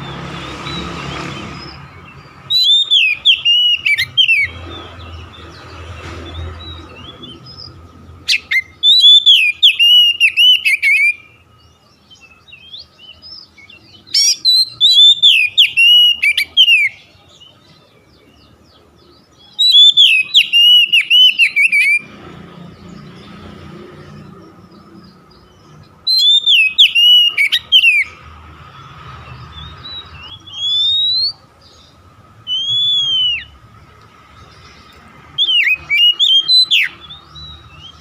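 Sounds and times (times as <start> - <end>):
bird singing whistles: 0.0 - 5.6, 8.3 - 17.5, 19.4 - 22.1, 25.0 - 28.2, 28.8 - 33.6, 35.4 - 38.0.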